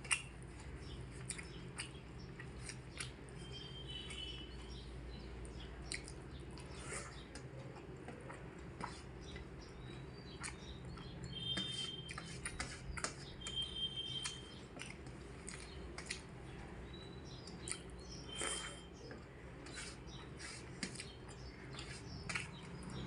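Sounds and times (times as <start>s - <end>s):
chewing: 0.0s - 3.4s, 5.5s - 13.3s, 14.2s - 16.4s, 17.5s - 23.0s.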